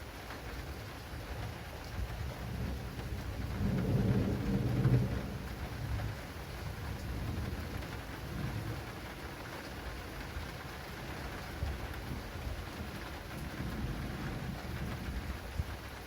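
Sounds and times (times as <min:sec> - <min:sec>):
heavy rain on an awning: 0:00.0 - 0:16.0
thunder rumbling: 0:02.2 - 0:08.9, 0:11.8 - 0:15.8.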